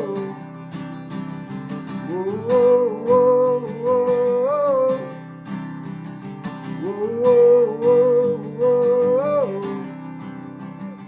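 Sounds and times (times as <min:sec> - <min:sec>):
person singing: 0:00.0 - 0:00.5, 0:02.0 - 0:05.2, 0:06.8 - 0:10.0
strummed acoustic guitar: 0:00.0 - 0:11.0.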